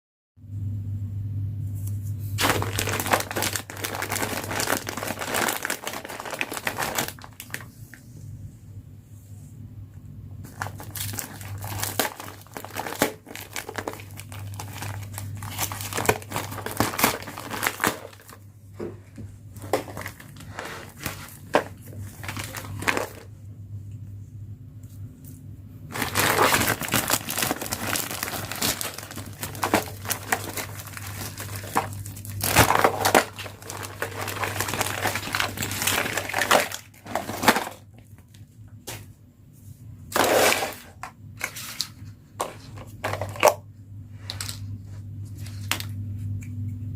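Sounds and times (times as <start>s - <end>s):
faint low hum: 0.4s - 46.9s
plastic packaging crinkling: 2.3s - 7.9s, 10.4s - 23.3s, 25.9s - 38.5s, 40.1s - 43.6s.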